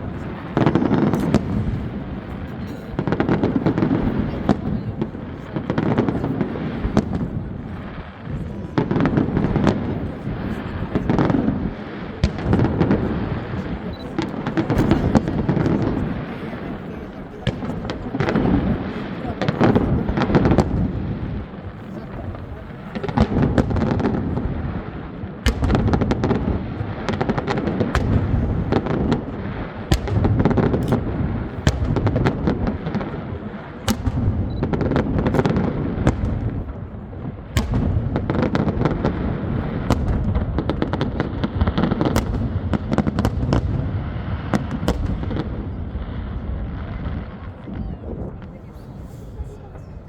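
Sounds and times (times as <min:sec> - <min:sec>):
fireworks booming: 0:00.0 - 0:49.9
fireworks cracking: 0:00.0 - 0:50.0.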